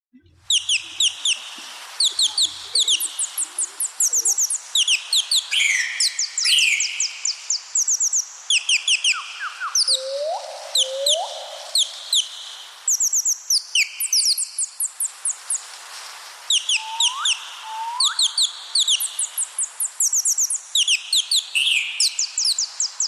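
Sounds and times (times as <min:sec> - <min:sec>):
birds chirping: 0:00.1 - 0:15.7, 0:16.5 - 0:23.0
steady hiss: 0:00.2 - 0:23.0
rising bird whistles: 0:07.9 - 0:12.3, 0:16.5 - 0:19.1.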